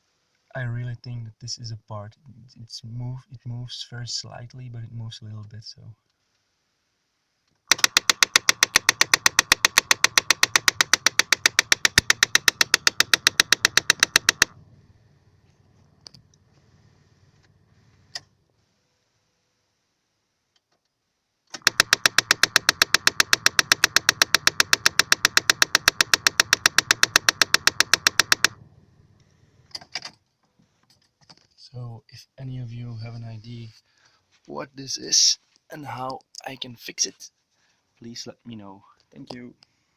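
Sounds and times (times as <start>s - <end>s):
rapid mechanical ticking: 7.7s - 18.3s, 21.5s - 29.3s.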